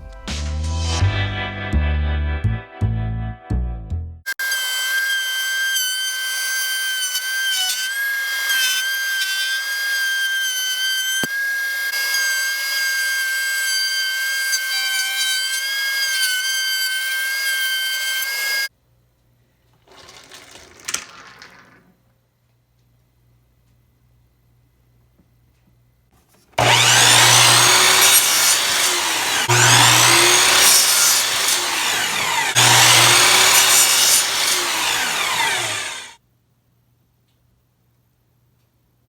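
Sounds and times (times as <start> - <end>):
power tool whining: 26.6 - 36.2.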